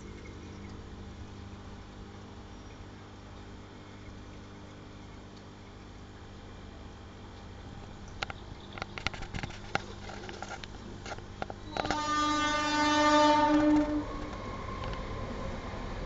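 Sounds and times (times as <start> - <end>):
horn blast: 11.6 - 14.4.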